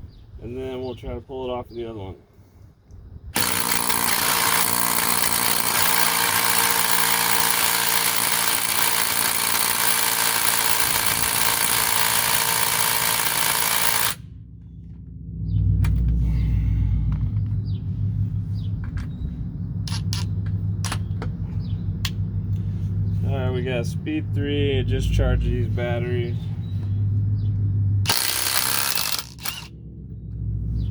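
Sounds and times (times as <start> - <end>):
impact wrench hammering: 3.4 - 14.2, 28.1 - 29.7
loud low rumble: 14.3 - 28.1.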